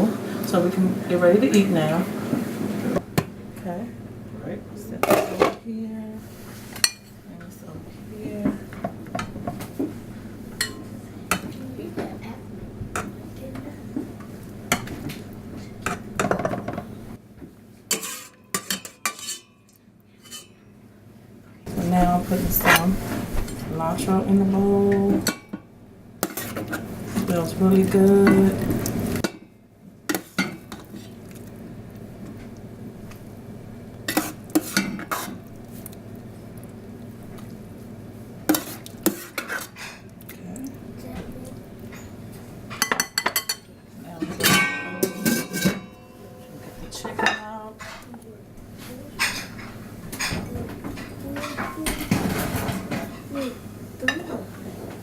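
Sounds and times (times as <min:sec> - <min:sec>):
dishes clattering: 0:05.0 - 0:05.6, 0:10.6 - 0:12.2, 0:15.8 - 0:16.9, 0:17.9 - 0:20.7, 0:41.9 - 0:48.1, 0:49.2 - 0:55.0
dishes knocking and clinking: 0:08.4 - 0:10.0, 0:15.8 - 0:19.6, 0:41.9 - 0:48.0, 0:49.2 - 0:53.3.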